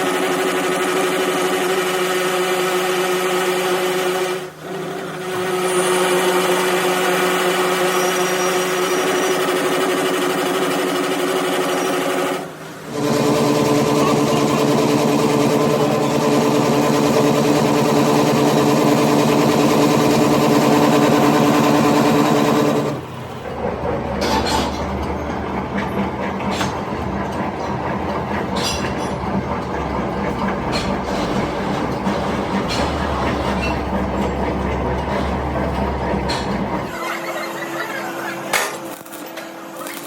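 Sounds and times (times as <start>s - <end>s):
motor-driven machine running: 6.0s - 36.9s.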